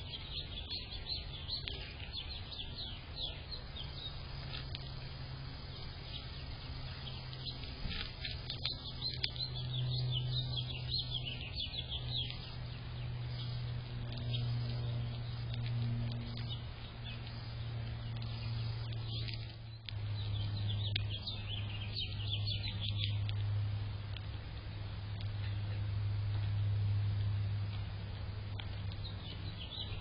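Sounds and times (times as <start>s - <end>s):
small birds chirping: 0.0s - 26.6s, 27.2s - 30.0s
steady low hum: 0.0s - 30.0s.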